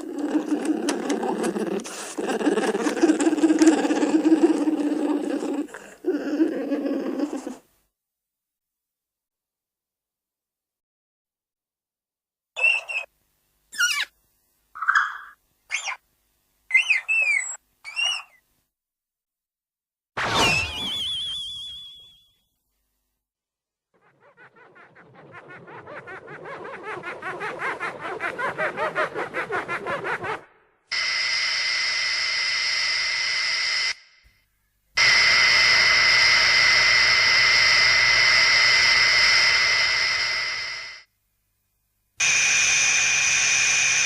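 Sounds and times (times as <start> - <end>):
shrill warbling creature cry: 0.0 - 7.6, 16.7 - 18.4.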